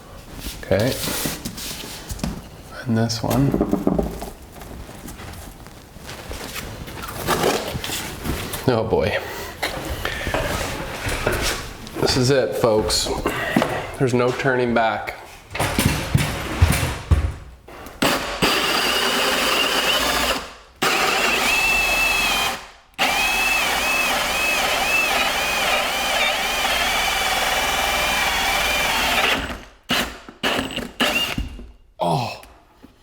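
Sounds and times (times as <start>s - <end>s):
power drill boring through wood: 18.0s - 31.6s.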